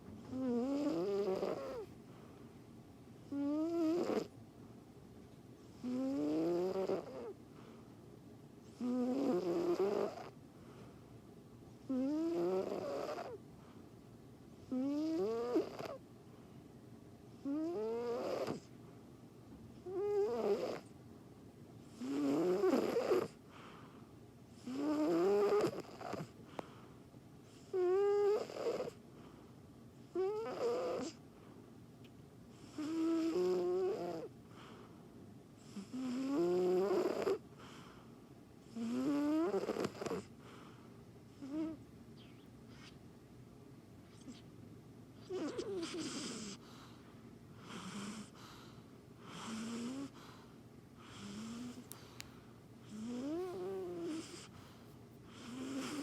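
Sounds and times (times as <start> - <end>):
whistling nasal snoring: 0.3 - 1.9, 5.8 - 7.3, 8.7 - 10.3, 11.9 - 13.4, 14.7 - 16.0, 17.4 - 18.7, 19.9 - 20.9, 21.9 - 23.4, 24.6 - 26.3, 27.5 - 29.0, 30.2 - 31.2, 32.6 - 34.3, 35.6 - 37.4, 38.7 - 40.3, 41.4 - 43.0, 44.1 - 44.5, 45.2 - 46.6, 47.6 - 48.4, 49.3 - 50.2, 51.0 - 51.9, 52.8 - 54.5, 55.3 - 56.0.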